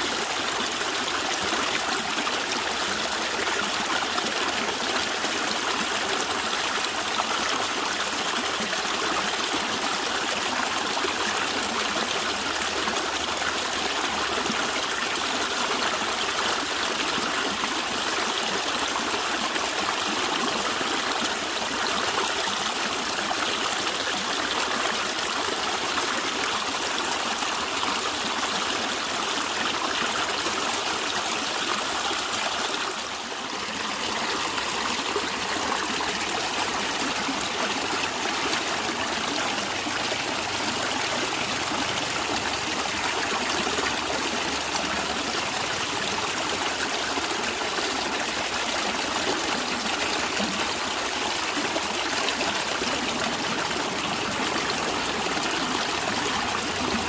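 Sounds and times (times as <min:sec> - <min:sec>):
stream gurgling and trickling: 0:00.0 - 0:57.0.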